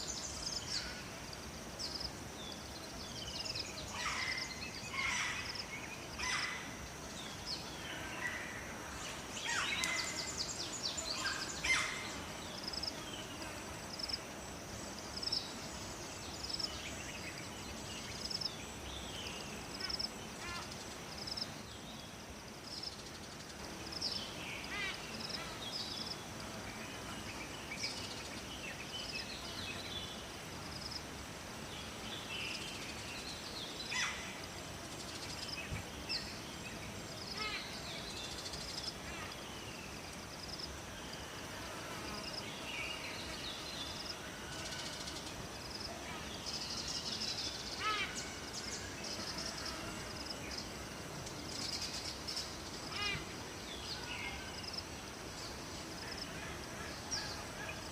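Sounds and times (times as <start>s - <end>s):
birds chirping and calling: 7.5s - 12.4s.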